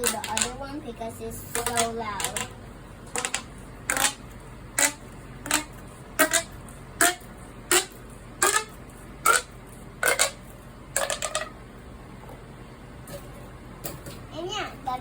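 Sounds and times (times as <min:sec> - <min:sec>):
pop tube toy buzzy toots: 0:04.8 - 0:10.4.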